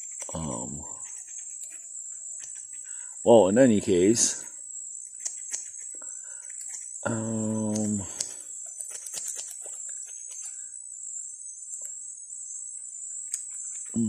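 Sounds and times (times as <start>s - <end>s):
high-pitched insect drone: 0.0s - 14.0s
scissors snipping hair: 5.2s - 10.5s
man humming: 7.0s - 8.2s.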